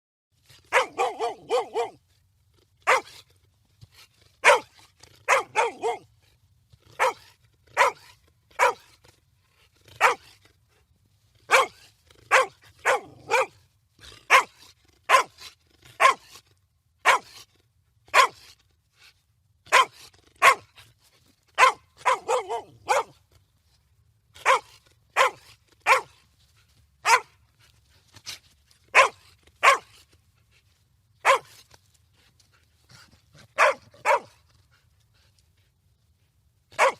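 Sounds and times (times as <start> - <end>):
dog barking: 0.7 - 2.0, 2.8 - 3.2, 4.4 - 4.7, 5.3 - 6.1, 7.0 - 8.9, 10.0 - 10.3, 11.5 - 13.6, 14.3 - 15.4, 16.0 - 16.3, 17.0 - 17.4, 18.1 - 18.4, 19.7 - 20.7, 21.6 - 23.2, 24.4 - 26.1, 27.0 - 27.4, 28.9 - 29.9, 31.2 - 31.5, 33.6 - 34.4.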